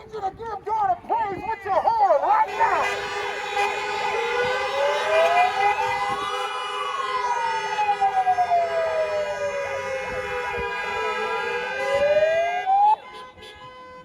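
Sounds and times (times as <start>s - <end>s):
siren wailing: 3.7s - 13.0s
siren yelps: 3.8s - 13.0s.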